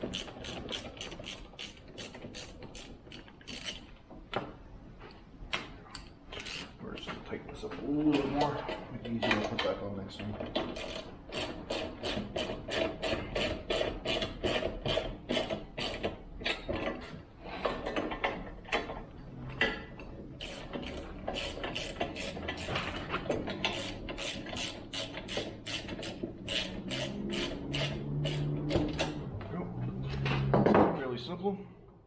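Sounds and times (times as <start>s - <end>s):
socket wrench ratchet clicking: 0.0s - 3.8s, 10.8s - 16.1s, 20.4s - 22.8s, 23.7s - 29.1s.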